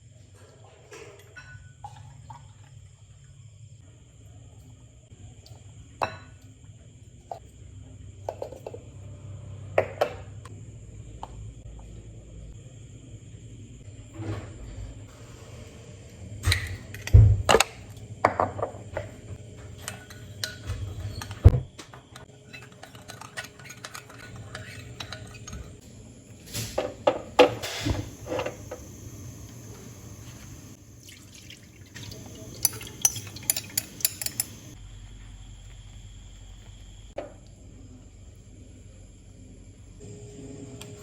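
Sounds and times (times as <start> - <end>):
dishes and cutlery clattering: 18.5 - 25.8, 32.0 - 34.8.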